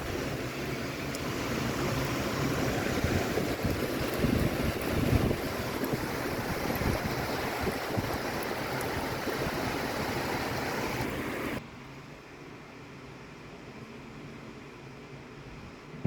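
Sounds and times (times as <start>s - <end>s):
storm wind buffeting microphone: 1.2s - 11.6s.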